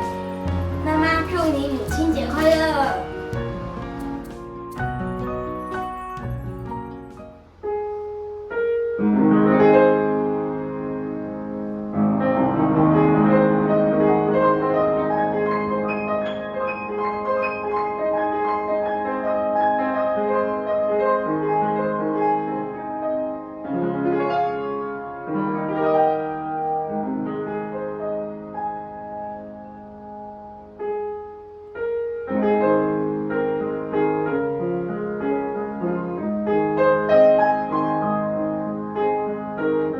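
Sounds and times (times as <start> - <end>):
piano playing slow melody: 0.0 - 39.9.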